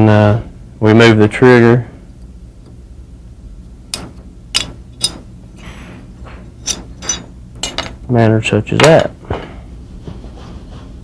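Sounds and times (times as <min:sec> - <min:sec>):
metal scrape: 0:06.6 - 0:07.3.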